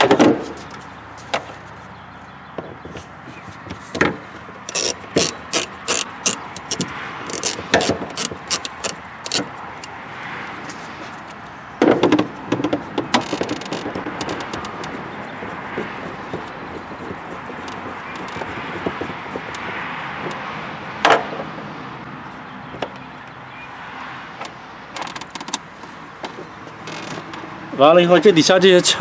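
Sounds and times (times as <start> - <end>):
tool clatter: 4.0 - 9.5
hand tools clicking: 4.7 - 9.9.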